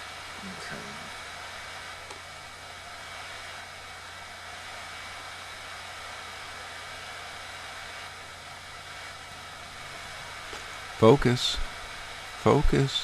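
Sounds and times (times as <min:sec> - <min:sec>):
hot air wand blowing air: 0:00.0 - 0:13.0.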